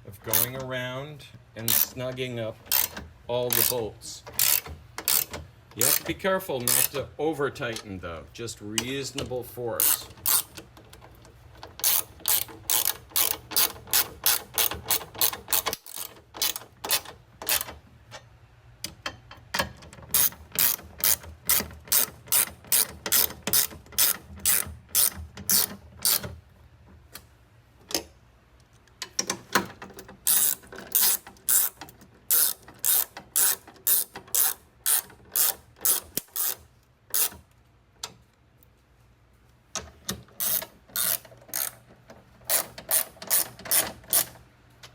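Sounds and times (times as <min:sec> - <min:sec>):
ratchet wrench clicking: 0:00.3 - 0:00.6, 0:01.6 - 0:02.0, 0:02.6 - 0:07.0, 0:09.8 - 0:10.7, 0:11.8 - 0:17.7, 0:20.1 - 0:26.3, 0:30.2 - 0:37.5, 0:40.3 - 0:44.4.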